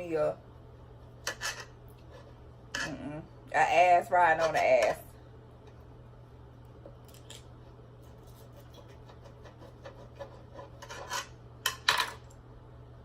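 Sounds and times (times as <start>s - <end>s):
knife scraping a plate: 1.2s - 3.1s, 4.3s - 5.0s, 8.1s - 11.8s.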